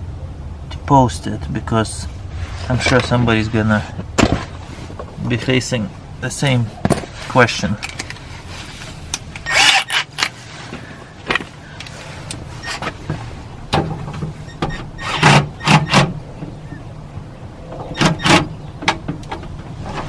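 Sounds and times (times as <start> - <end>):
steady low hum: 0.0 - 20.0
metal parts knocking and clunking: 9.3 - 10.4.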